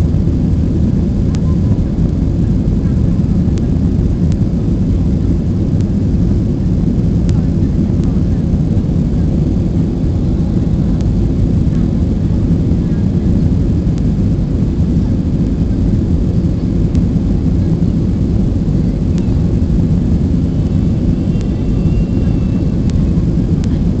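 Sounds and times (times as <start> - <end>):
airplane engines rumbling: 0.0 - 24.0
faint clicks: 23.6 - 23.8.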